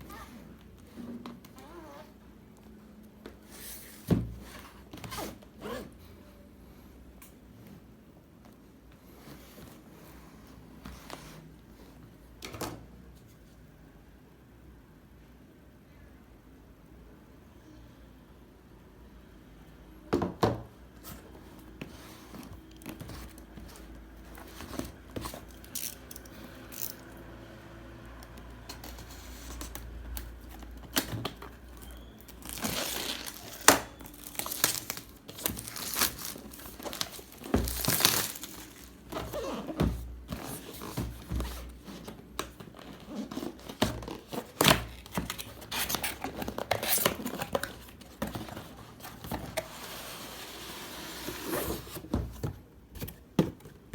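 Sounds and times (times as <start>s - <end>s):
plastic wrap crinkling and tearing: 31.9s - 39.5s.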